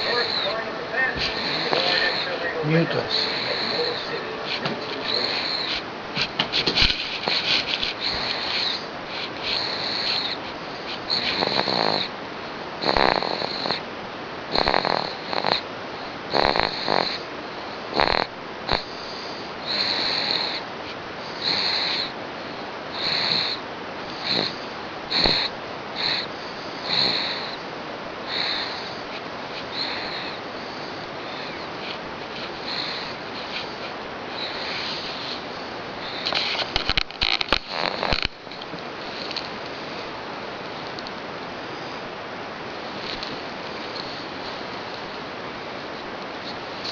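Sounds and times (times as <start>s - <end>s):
pet snoring: 0.0s - 0.6s, 1.3s - 2.3s, 2.9s - 4.2s, 5.1s - 5.8s, 7.1s - 12.1s, 12.8s - 13.9s, 14.5s - 15.7s, 16.3s - 17.3s, 17.9s - 18.9s, 19.6s - 20.7s, 21.3s - 22.2s, 22.9s - 27.6s, 28.2s - 29.0s, 29.6s - 35.4s, 37.2s - 38.3s.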